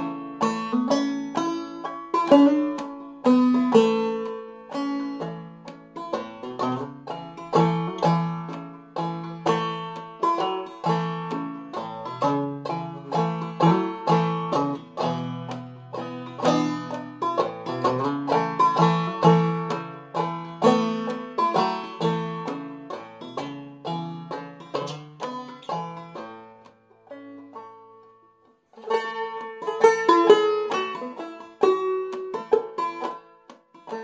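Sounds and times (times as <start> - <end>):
banjo waltz melody: 0.0 - 34.0.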